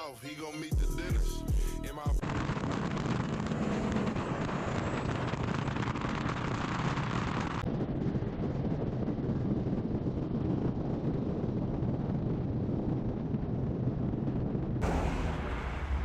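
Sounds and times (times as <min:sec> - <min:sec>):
wind noise on microphone: 0:00.8 - 0:16.0
diesel truck engine rumbling: 0:14.8 - 0:16.0.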